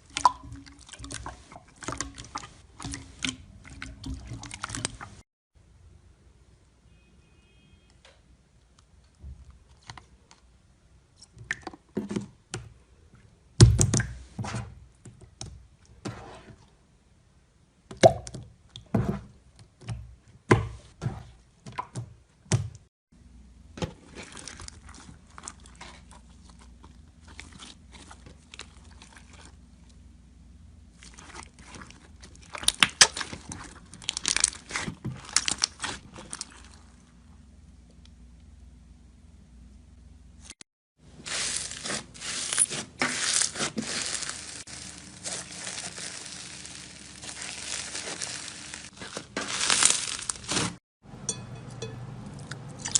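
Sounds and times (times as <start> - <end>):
slime squished by hand: 30.9 - 37.1, 41.2 - 50.8.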